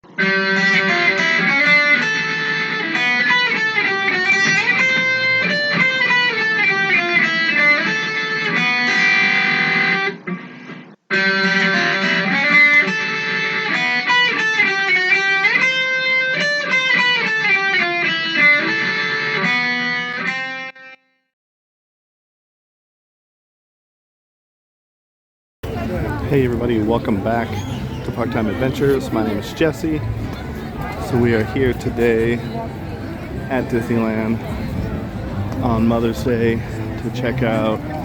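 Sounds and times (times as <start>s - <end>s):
electric guitar intro music: 0.1s - 21.2s.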